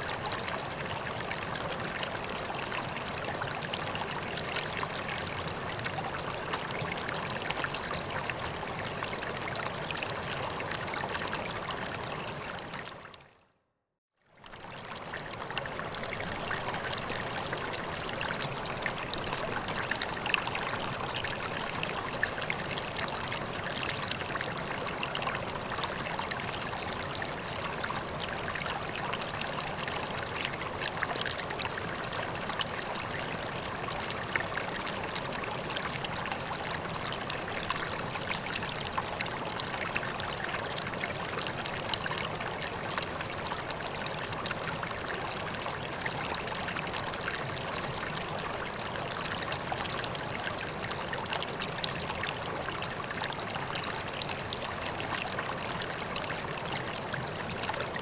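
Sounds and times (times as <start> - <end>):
water pouring into pond: 14.4 - 58.0.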